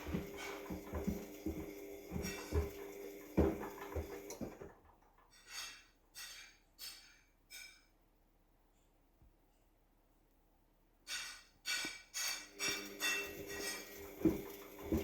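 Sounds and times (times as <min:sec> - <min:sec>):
washing machine humming: 0:00.0 - 0:05.0, 0:12.5 - 0:15.0.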